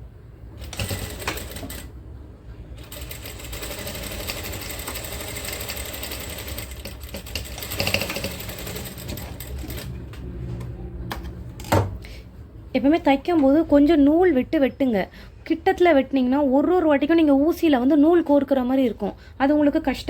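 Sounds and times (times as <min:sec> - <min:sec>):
electric sewing machine stitching: 0:00.6 - 0:01.9, 0:02.8 - 0:09.9
sewing machine clicks: 0:02.8 - 0:09.9.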